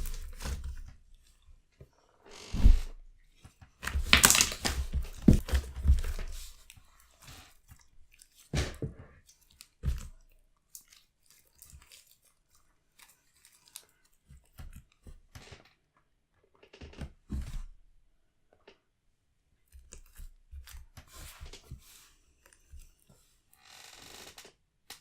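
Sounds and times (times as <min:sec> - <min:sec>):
slime squelching and crackling: 0:00.0 - 0:01.3, 0:03.8 - 0:08.6, 0:09.2 - 0:14.9.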